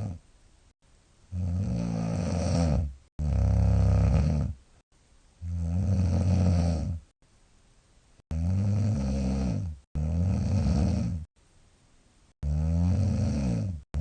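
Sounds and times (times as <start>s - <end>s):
woman snoring heavily: 0.0s - 0.2s, 1.3s - 4.6s, 5.4s - 7.1s, 8.3s - 11.3s, 12.4s - 14.0s.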